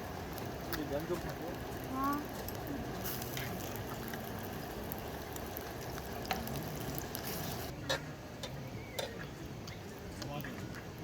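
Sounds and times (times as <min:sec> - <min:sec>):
food sizzling in a pan: 0:00.0 - 0:07.7.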